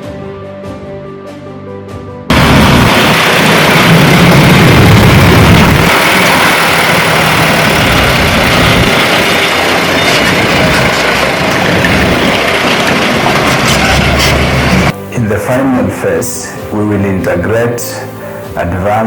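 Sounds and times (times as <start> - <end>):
heavy vehicle engine rumbling: 2.3 - 15.0
soft background music: 14.9 - 19.0.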